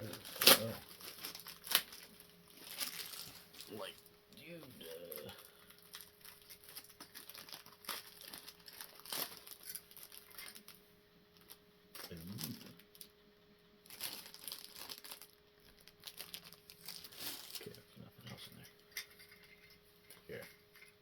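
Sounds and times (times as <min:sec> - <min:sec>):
plastic packaging crinkling: 0:00.0 - 0:04.0, 0:04.8 - 0:13.1, 0:13.8 - 0:17.8.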